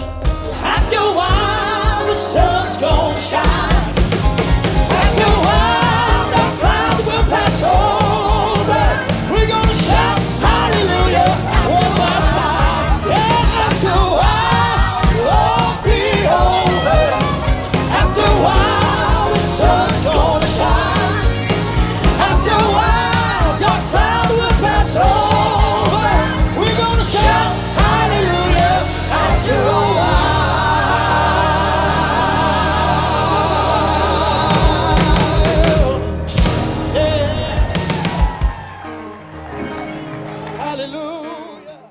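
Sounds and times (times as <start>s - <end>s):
drums: 0.0s - 39.0s
bass: 0.0s - 40.8s
gospel singers: 0.0s - 41.9s.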